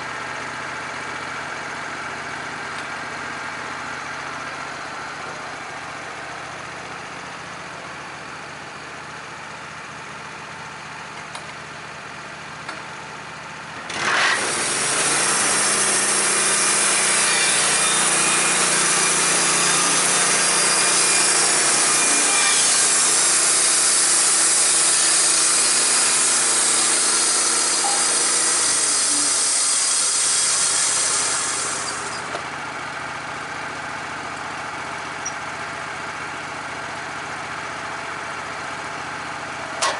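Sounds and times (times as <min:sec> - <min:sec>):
sawmill engine idling: 0:00.0 - 0:39.9
band saw blade cutting log: 0:13.9 - 0:32.5.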